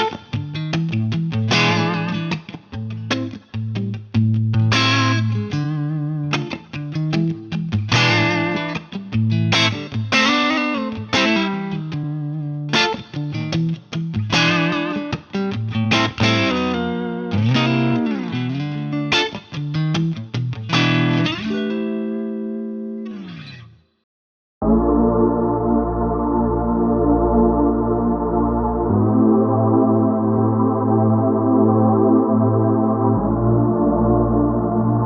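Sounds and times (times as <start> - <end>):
clean electric guitar chords: 0.0 - 23.6, 24.6 - 35.0
sustained synth pad chord: 24.6 - 35.0.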